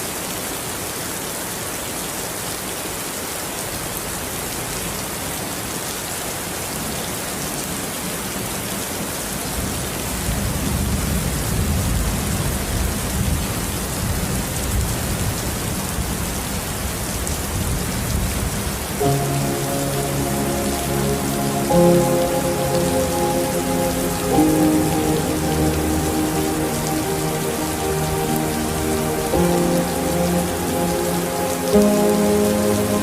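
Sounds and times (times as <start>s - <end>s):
steady rain falling: 0.0s - 33.0s.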